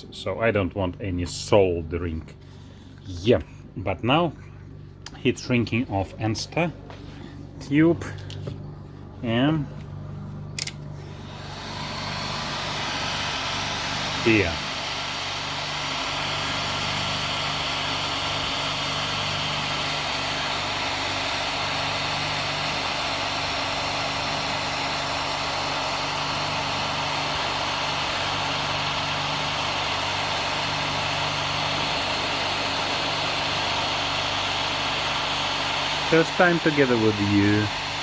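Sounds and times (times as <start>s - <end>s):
heat gun blowing: 10.6s - 38.0s.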